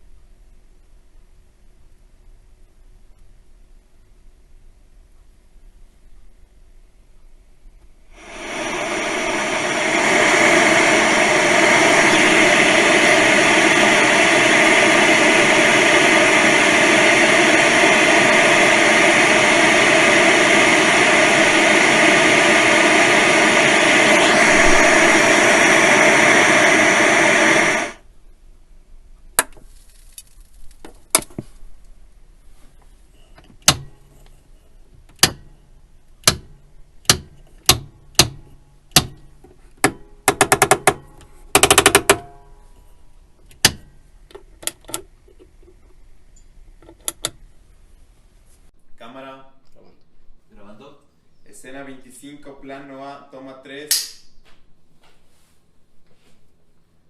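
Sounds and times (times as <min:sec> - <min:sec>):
tv static hiss: 0:07.9 - 0:28.1, 0:40.2 - 0:48.7.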